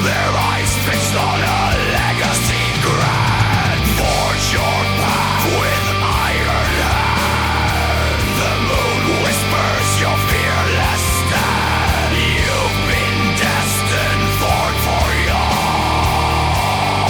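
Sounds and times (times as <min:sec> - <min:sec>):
heavy metal guitars: 0:00.0 - 0:17.0.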